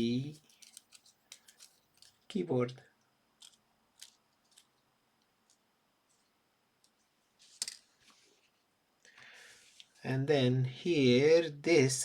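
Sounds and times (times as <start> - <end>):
plastic phone parts clicking: 0.4 - 2.4, 3.4 - 4.8.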